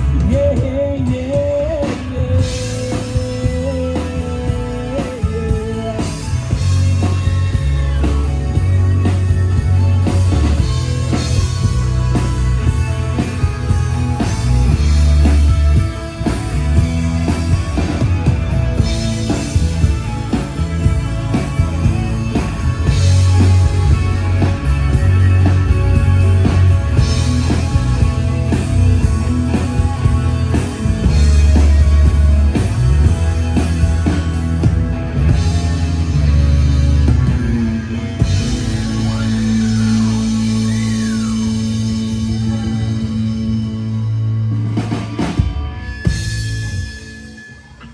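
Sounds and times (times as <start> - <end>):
heavy bass line: 0.0 - 46.8
drum kit beat: 0.0 - 47.1
electric guitar: 0.0 - 47.9.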